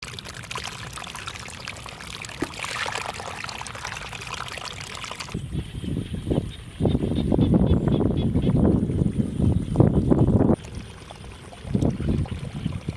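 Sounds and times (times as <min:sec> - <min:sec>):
water pouring and splashing: 0:00.0 - 0:05.4, 0:10.2 - 0:12.9.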